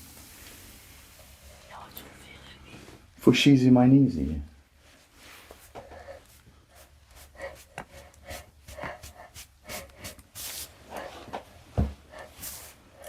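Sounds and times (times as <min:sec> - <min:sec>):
hands rubbing on clothing: 0:04.9 - 0:12.8.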